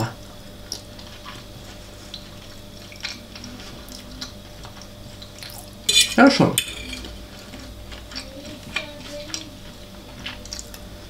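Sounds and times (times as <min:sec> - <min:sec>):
low steady hum: 0:00.0 - 0:11.0
wet chewing clicks: 0:10.2 - 0:10.8.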